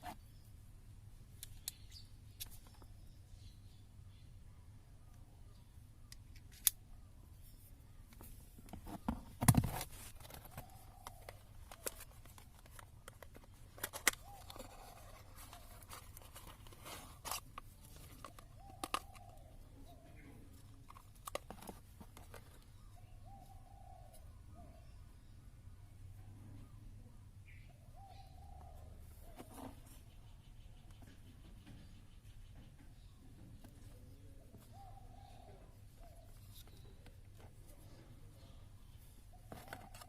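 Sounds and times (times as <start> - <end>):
faint bird calling: 10.1 - 21.4, 22.1 - 40.0.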